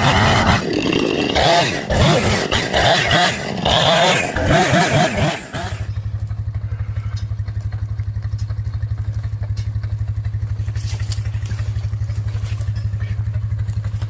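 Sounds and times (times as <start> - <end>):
engine running at low revs: 0.0 - 14.0
faint clatter: 6.0 - 14.0.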